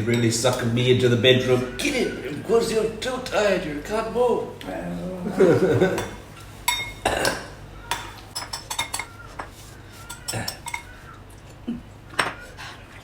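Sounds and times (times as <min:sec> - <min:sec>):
cutlery clinking on plates: 0:00.0 - 0:00.8, 0:05.9 - 0:11.0, 0:12.1 - 0:12.4.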